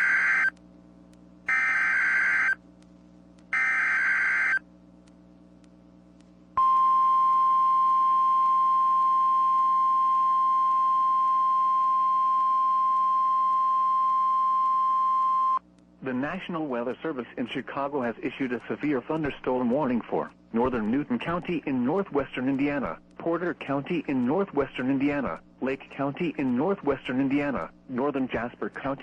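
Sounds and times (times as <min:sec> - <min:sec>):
steady high alarm tone: 0:00.0 - 0:00.5, 0:01.5 - 0:02.6, 0:03.6 - 0:04.6.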